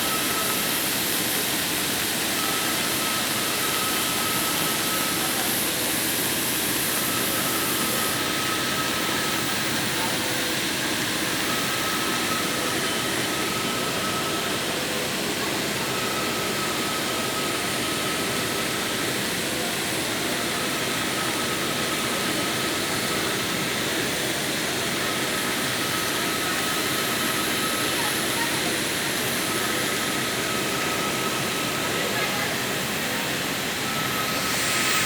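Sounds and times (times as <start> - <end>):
welding hiss: 0.0 - 13.6, 23.6 - 35.0.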